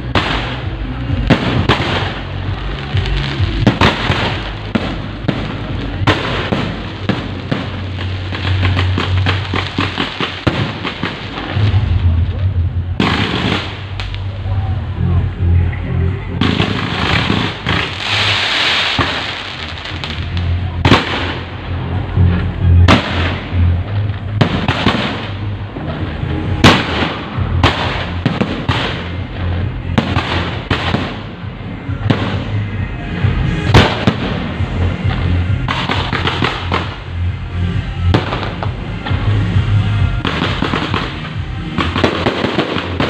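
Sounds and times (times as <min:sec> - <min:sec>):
sharp firecracker bangs: 0:00.0 - 0:14.2, 0:16.4 - 0:21.6, 0:22.8 - 0:23.6, 0:24.4 - 0:25.4, 0:26.6 - 0:29.3, 0:29.9 - 0:31.4, 0:33.5 - 0:37.1, 0:38.0 - 0:39.3, 0:40.2 - 0:43.0
fireworks crackling: 0:00.0 - 0:15.3, 0:16.4 - 0:43.0
loud music: 0:00.0 - 0:43.0.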